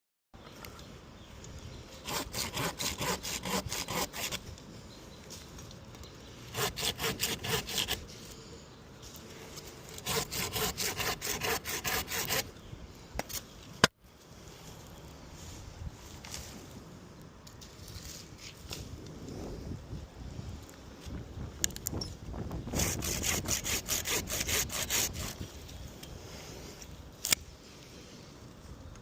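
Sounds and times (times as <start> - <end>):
handsaw cutting branch: 2.0 - 4.5, 6.5 - 8.4, 9.5 - 12.5, 22.7 - 25.5.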